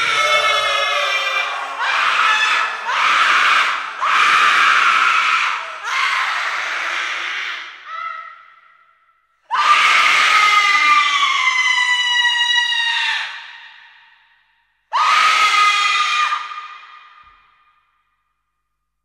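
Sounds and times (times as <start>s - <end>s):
high-pitched human screams: 0.0s - 8.6s, 9.5s - 13.8s, 14.9s - 17.2s.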